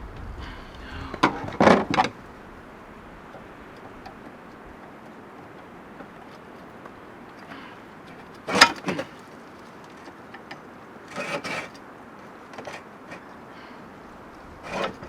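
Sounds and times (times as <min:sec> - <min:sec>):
scraping rattle: 0:07.5 - 0:10.1, 0:11.1 - 0:11.8, 0:14.3 - 0:15.0.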